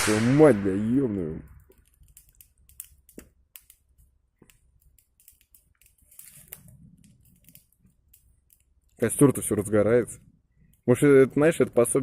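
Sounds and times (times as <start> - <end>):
campfire crackling: 0.0 - 12.0
fire hissing: 5.4 - 8.4.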